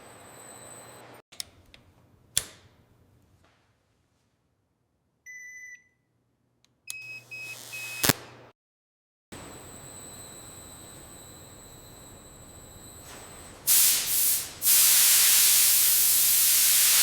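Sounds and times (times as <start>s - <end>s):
electronic beeps: 7.0s - 8.1s.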